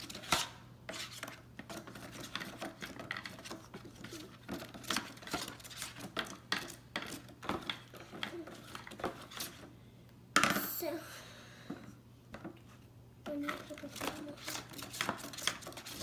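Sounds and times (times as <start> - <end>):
utensil scraping and clicking bowl: 0.0 - 9.7, 13.3 - 16.0
utensil stirring thick mixture: 0.0 - 9.7, 13.3 - 16.0.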